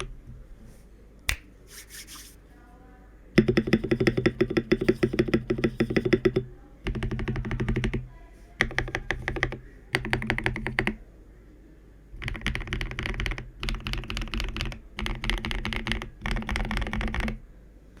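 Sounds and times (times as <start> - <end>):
mechanical keyboard typing: 3.4 - 8.0, 8.6 - 11.0, 12.2 - 17.4.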